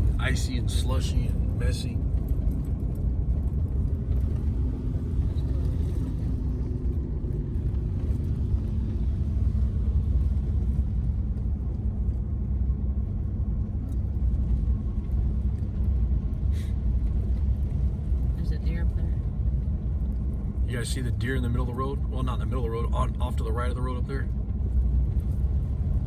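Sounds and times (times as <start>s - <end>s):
truck driving on gravel road: 0.0s - 26.0s.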